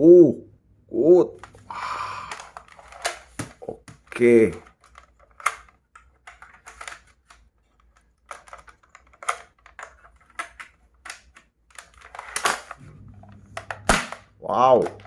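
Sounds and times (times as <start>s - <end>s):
toy gun plastic clicks: 2.3s - 12.8s.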